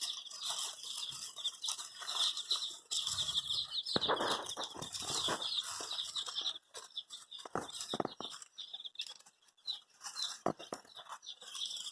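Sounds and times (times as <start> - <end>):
baby chicks peeping: 0.0 - 11.9
sharp taps and knocks: 3.9 - 5.6, 7.4 - 8.6, 10.3 - 11.2.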